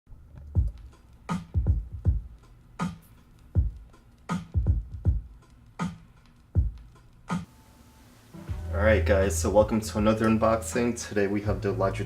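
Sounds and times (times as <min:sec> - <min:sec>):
electronic music with drum-machine beat: 0:00.4 - 0:07.5, 0:08.4 - 0:10.8.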